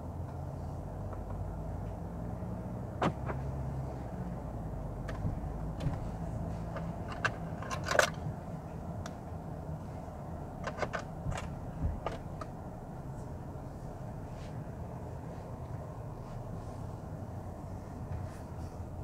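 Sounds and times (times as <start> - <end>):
car driving heard from inside: 0.0 - 19.0
light clicks and rattles: 5.0 - 9.3, 10.5 - 13.3.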